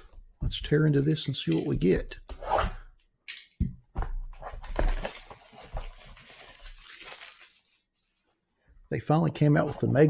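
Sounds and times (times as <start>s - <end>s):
plastic wrap ripping: 4.6s - 8.4s
plastic crinkling: 4.6s - 8.5s.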